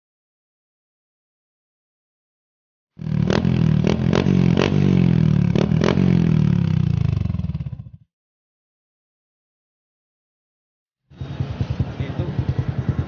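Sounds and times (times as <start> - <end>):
motorcycle engine running: 3.0 - 8.1, 11.1 - 13.0.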